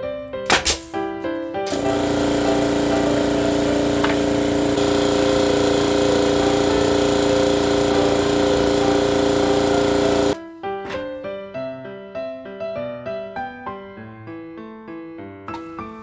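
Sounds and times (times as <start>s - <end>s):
power tool motor whirring: 1.7s - 10.4s.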